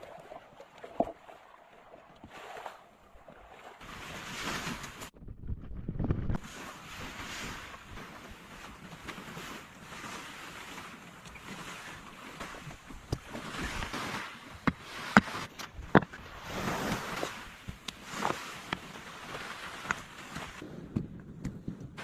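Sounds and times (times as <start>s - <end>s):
wind on microphone: 3.8s - 22.0s
sea surf washing in: 6.4s - 15.6s, 16.3s - 20.6s.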